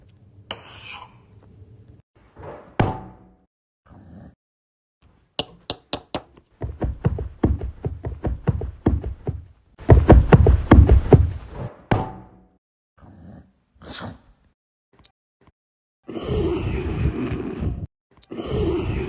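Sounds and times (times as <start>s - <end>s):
foley knocks and thuds: 5.4s - 12.3s.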